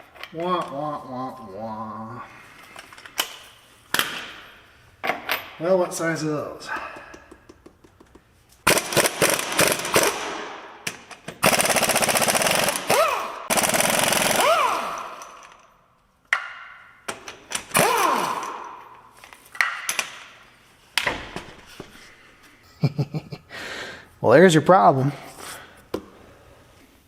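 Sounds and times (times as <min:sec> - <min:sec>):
impact wrench hammering: 0:07.2 - 0:15.6, 0:16.3 - 0:18.9.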